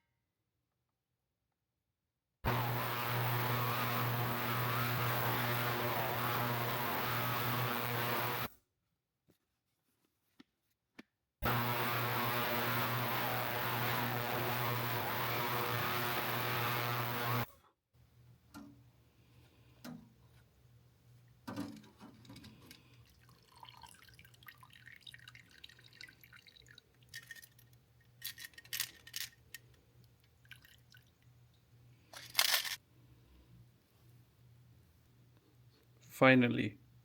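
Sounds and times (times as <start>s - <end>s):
electric machine humming: 2.4s - 8.5s, 11.4s - 17.5s.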